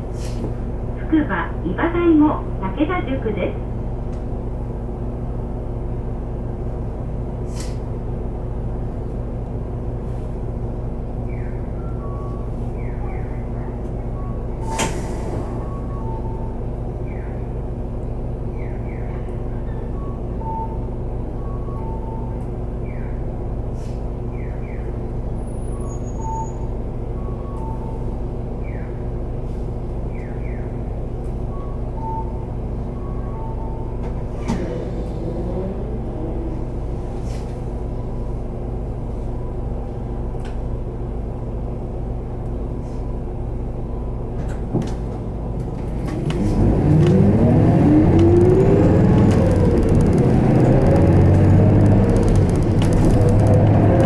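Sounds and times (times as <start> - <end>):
bus drivetrain drone: 0.0 - 42.8, 43.4 - 54.0
squeals: 46.1 - 54.0
brief falling tone: 46.8 - 54.0.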